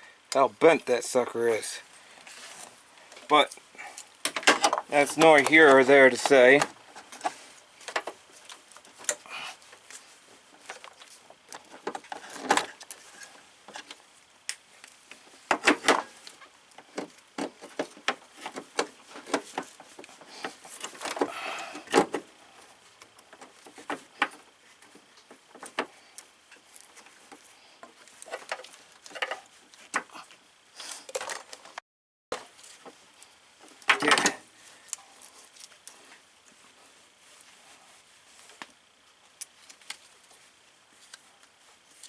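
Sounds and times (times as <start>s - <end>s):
scraping rustle of rubber hose: 0.9s - 4.2s, 4.8s - 31.1s.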